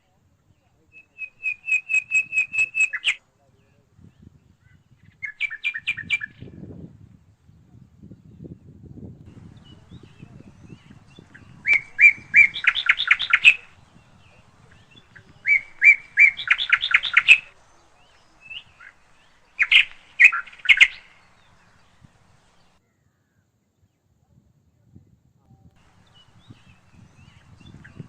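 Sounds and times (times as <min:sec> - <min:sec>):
bird chirping: 0:00.5 - 0:06.6, 0:09.3 - 0:22.8, 0:25.8 - 0:28.0.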